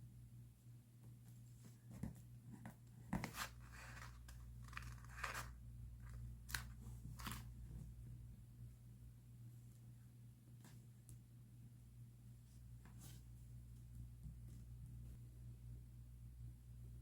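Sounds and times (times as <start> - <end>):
low steady hum: 0.0 - 17.0
paper rustling: 3.2 - 7.5.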